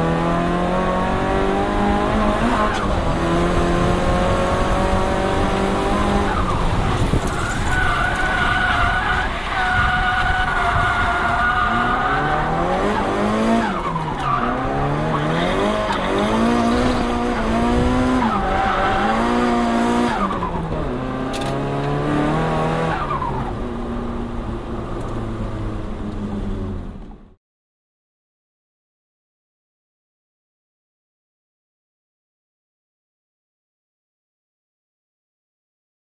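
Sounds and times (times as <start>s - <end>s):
car engine revving: 0.0s - 27.1s
tyre squeal: 6.3s - 17.0s.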